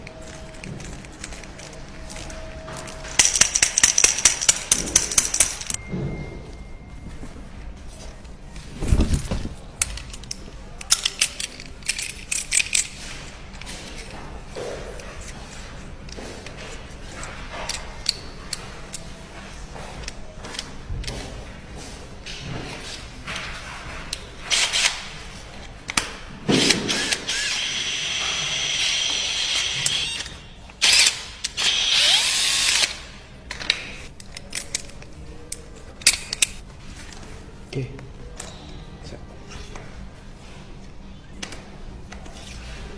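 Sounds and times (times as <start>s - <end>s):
flaring tool clicking: 3.1s - 5.8s, 25.9s - 34.9s.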